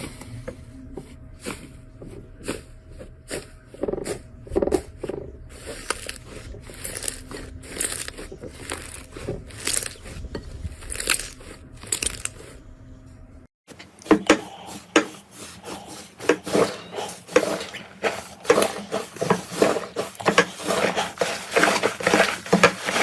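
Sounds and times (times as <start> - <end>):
slime crackling and popping: 10.8 - 12.3.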